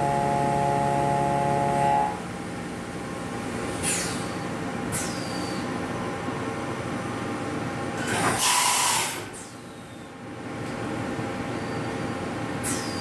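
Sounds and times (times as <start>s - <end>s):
machine running with held tones: 0.0s - 2.2s.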